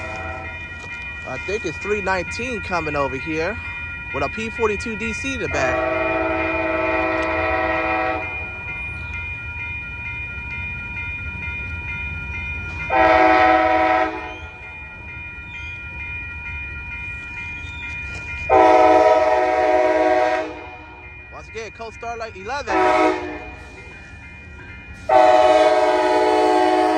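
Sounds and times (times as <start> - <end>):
train horn blasts: 0.0 - 0.6, 5.7 - 8.4, 12.9 - 14.5, 18.5 - 21.0, 22.7 - 23.6, 25.1 - 26.9
steady high ringing: 0.0 - 26.9
train low rumble: 0.0 - 26.9.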